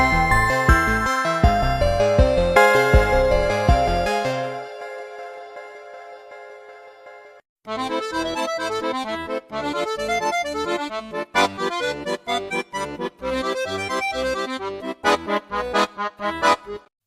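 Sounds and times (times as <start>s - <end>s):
pulsing bass: 0.0s - 4.1s
electronic accordion-like melody: 0.0s - 16.9s.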